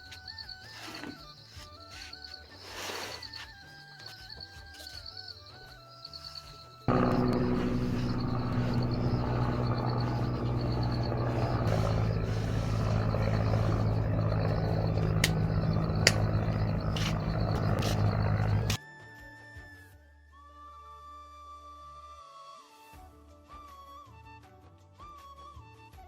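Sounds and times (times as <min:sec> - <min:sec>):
mechanical drone with hum: 0:06.9 - 0:18.8.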